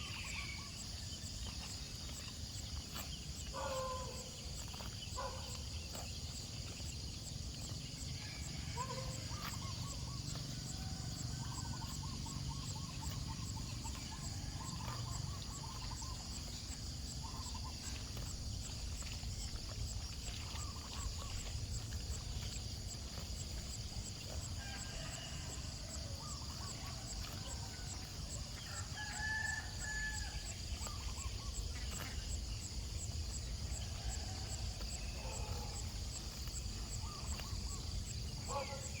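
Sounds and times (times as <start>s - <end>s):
rooster crowing: 8.2s - 9.6s, 10.6s - 12.0s, 24.5s - 30.5s, 33.8s - 35.7s.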